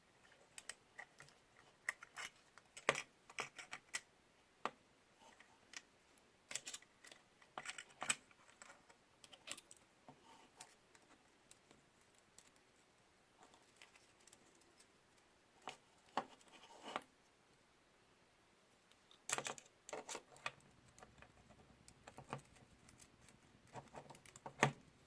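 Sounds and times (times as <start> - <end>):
small tools clicking and tapping: 0.5 - 4.1.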